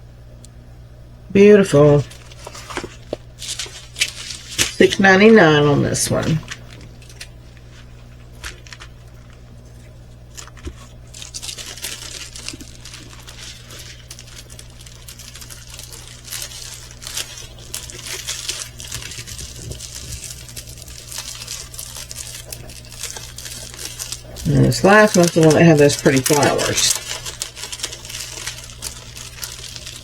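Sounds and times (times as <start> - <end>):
plastic packaging crinkling: 1.7 - 30.0.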